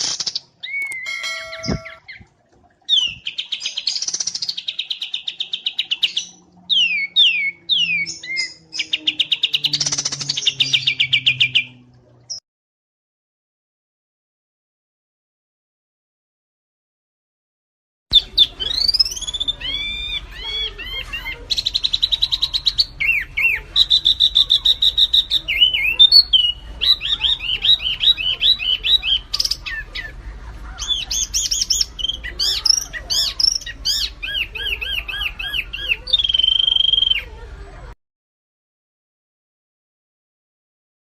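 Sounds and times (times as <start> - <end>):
small bird singing: 0.0 - 2.3, 2.9 - 12.4, 18.1 - 30.2, 30.8 - 37.3.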